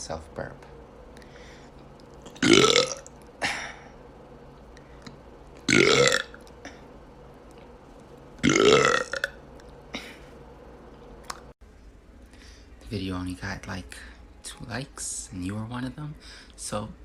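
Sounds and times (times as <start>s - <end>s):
man burping: 2.3s - 3.9s, 5.7s - 6.4s, 8.4s - 9.4s.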